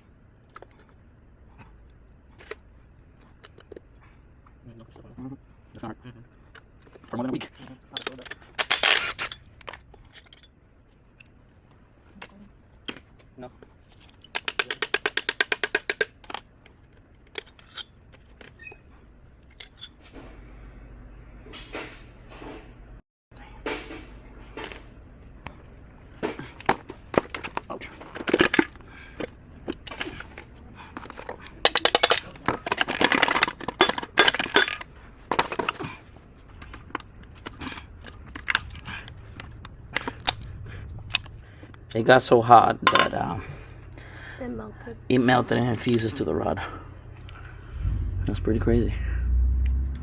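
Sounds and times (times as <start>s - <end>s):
metal parts clinking and rattling: 6.8s - 11.3s, 13.8s - 18.7s, 19.4s - 20.1s, 26.6s - 40.5s.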